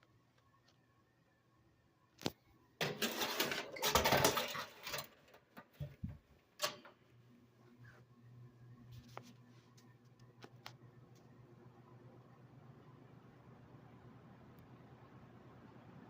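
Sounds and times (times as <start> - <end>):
metal fan clattering and rattling: 2.8 - 6.9
electric fan motor hum: 8.2 - 16.0.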